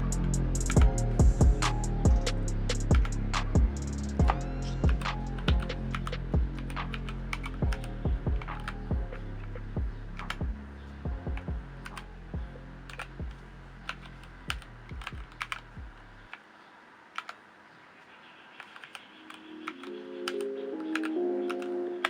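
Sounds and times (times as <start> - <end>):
mechanical keyboard keystrokes: 4.2 - 8.8, 12.9 - 15.7, 18.6 - 22.0.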